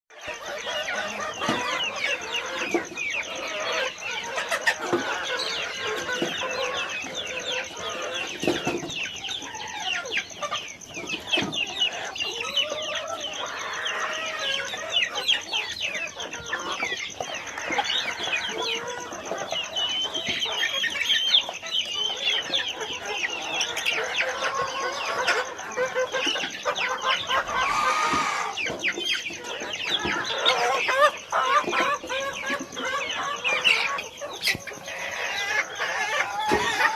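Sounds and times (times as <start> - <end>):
chickens clucking: 0.1 - 36.9.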